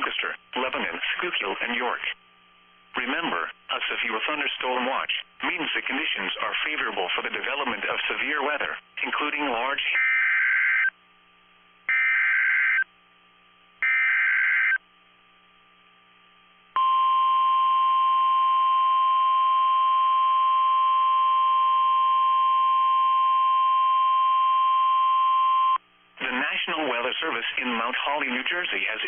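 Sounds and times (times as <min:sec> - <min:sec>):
steady warning alarm tone: 0:10.0 - 0:10.9, 0:11.9 - 0:12.9, 0:13.8 - 0:14.8.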